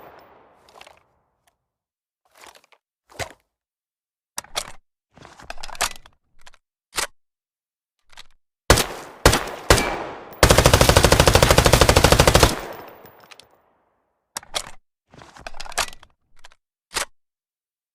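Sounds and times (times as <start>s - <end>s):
full-auto gunfire burst: 8.7s - 13.0s
submachine gun single shots: 8.7s - 13.1s.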